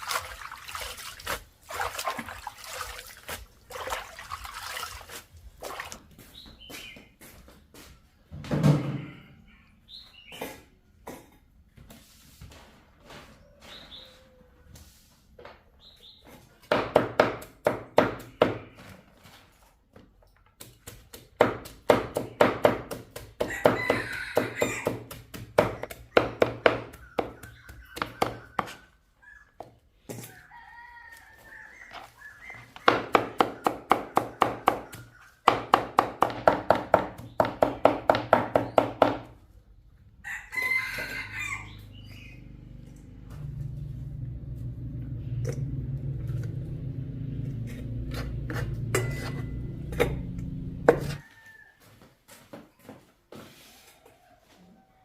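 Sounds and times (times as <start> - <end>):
rooster crowing: 23.4 - 25.1, 30.1 - 32.8, 40.2 - 42.5, 50.9 - 52.1.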